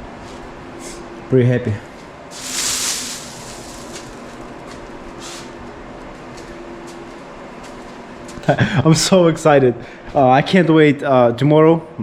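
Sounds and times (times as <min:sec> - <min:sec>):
steady low hum: 0:00.0 - 0:11.0
short hiss: 0:02.3 - 0:04.2.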